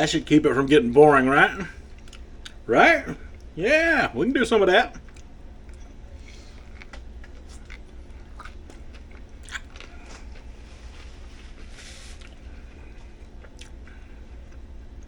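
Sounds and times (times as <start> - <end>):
low steady hum: 0.0 - 15.0
person chewing food: 1.9 - 2.6, 4.9 - 15.0.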